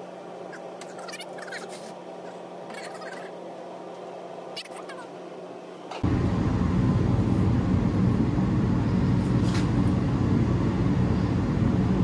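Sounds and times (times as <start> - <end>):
low mechanical rumble: 5.2 - 12.0.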